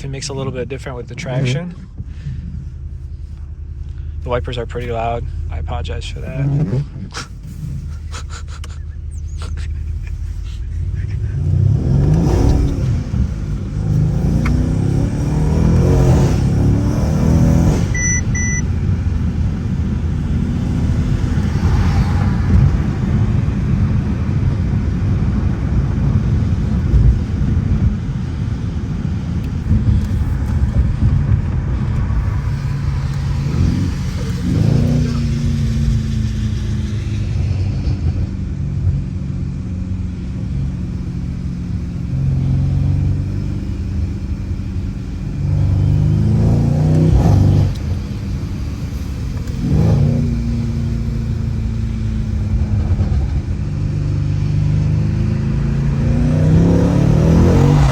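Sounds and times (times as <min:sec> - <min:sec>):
car engine accelerating: 0:00.0 - 0:57.9
road and rain noise: 0:00.0 - 0:57.9
short beeps: 0:17.9 - 0:18.7.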